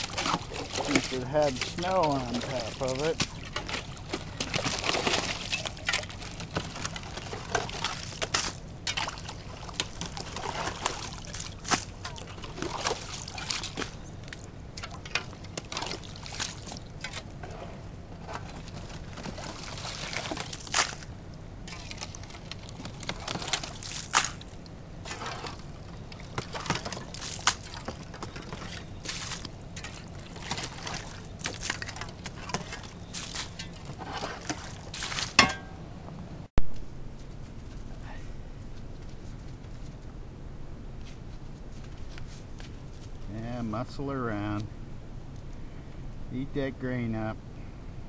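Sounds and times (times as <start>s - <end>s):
water sloshing and trickling: 0.0s - 35.9s
broken ice knocking and clinking: 26.3s - 35.8s.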